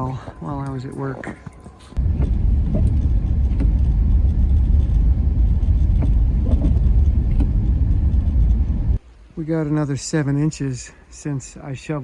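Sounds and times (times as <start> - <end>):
car interior road and engine noise: 0.7 - 9.0.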